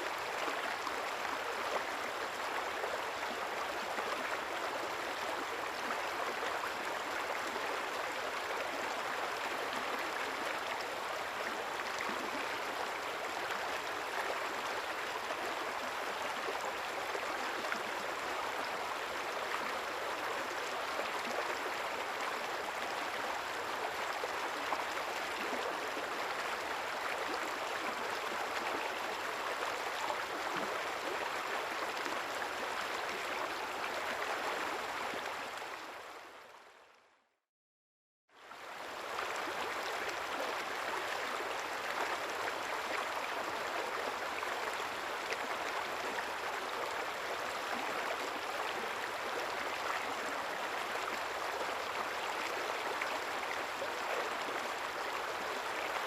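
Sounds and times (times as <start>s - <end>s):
river flowing: 0.0s - 36.6s, 38.4s - 56.0s.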